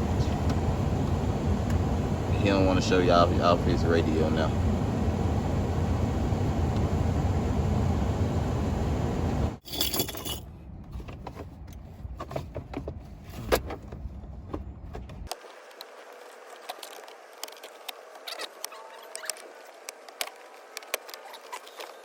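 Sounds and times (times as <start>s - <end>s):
loud rumbling noise: 0.0s - 9.6s.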